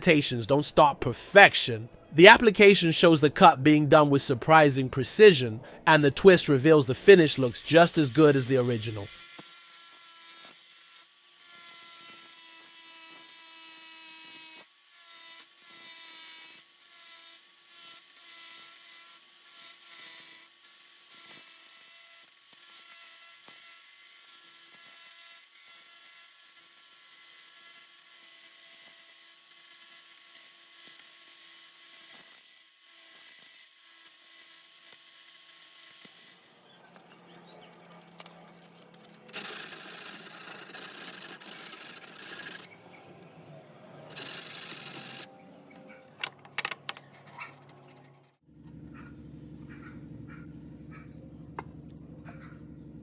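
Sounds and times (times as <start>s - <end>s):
small power tool whining: 7.0s - 42.7s, 44.1s - 45.4s.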